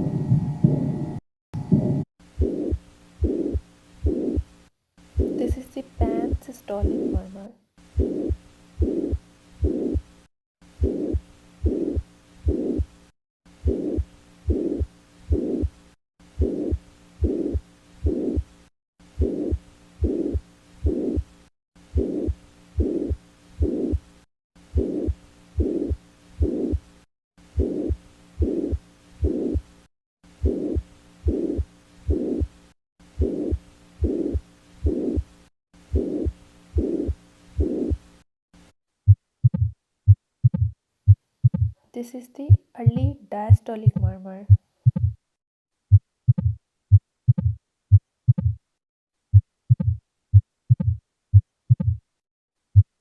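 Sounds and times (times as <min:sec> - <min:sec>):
heartbeat with murmur: 0:01.7 - 0:04.5, 0:05.1 - 0:07.2, 0:07.9 - 0:10.1, 0:10.8 - 0:13.0, 0:13.6 - 0:18.5, 0:19.2 - 0:21.3, 0:21.9 - 0:24.1, 0:24.7 - 0:26.8, 0:27.5 - 0:29.7, 0:30.4 - 0:32.6, 0:33.2 - 0:35.3, 0:35.9 - 0:38.0, 0:39.1 - 0:41.8, 0:42.5 - 0:45.2, 0:45.9 - 0:48.6, 0:49.3 - 0:52.0.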